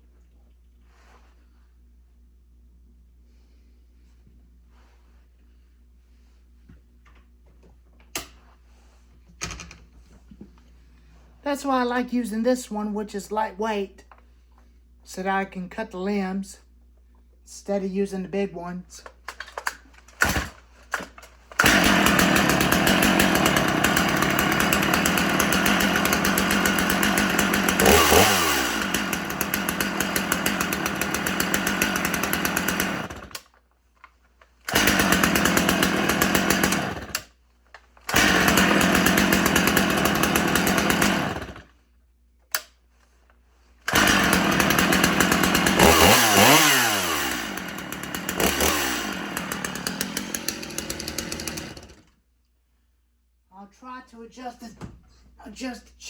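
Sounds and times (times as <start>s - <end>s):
chainsaw cutting tree limbs: 21.6s - 33.4s, 34.6s - 37.4s, 38.0s - 41.8s, 43.9s - 52.2s.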